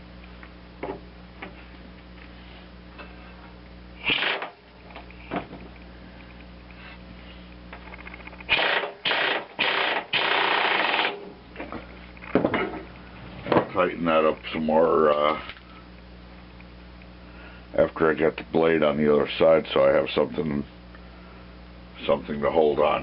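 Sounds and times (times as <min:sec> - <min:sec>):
steady low hum: 0:00.0 - 0:23.0.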